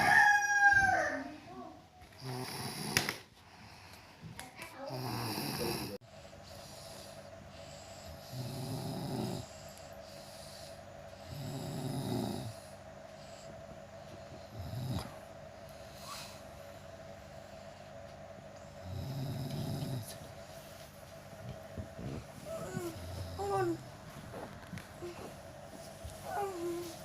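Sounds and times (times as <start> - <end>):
steady hum: 0.0 - 27.0
person snoring: 2.2 - 3.1, 4.8 - 7.2, 8.0 - 12.8, 14.5 - 15.2, 18.8 - 20.1, 22.0 - 23.8.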